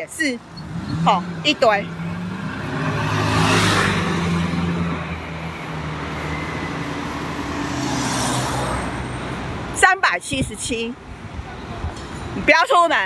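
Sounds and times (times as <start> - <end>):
steady traffic noise: 0.0 - 13.0
vehicle passing by: 0.5 - 9.8.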